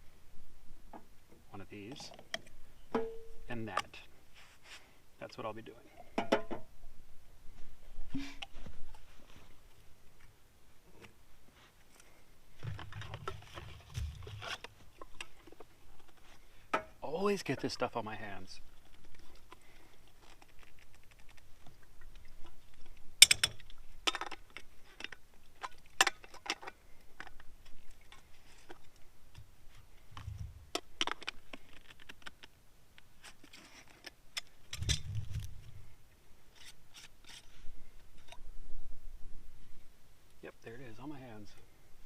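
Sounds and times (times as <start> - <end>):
plastic parts clicking and scraping: 30.2 - 32.5.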